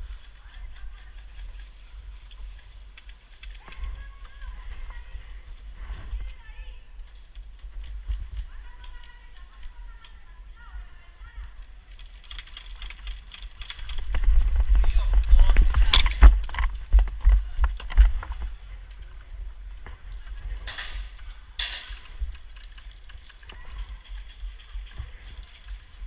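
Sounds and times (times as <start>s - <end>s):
gear clicking: 11.9s - 14.3s, 21.1s - 26.0s.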